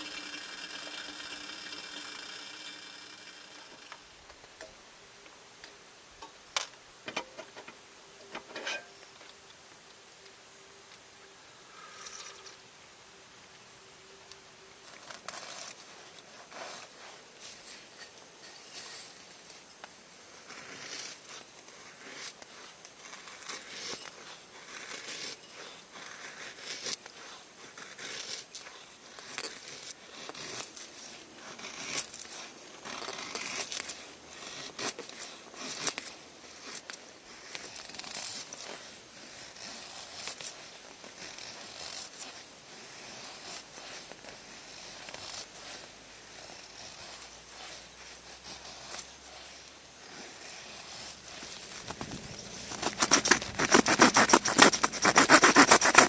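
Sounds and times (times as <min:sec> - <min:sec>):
material rustling and crinkling: 0:14.8 - 0:56.0.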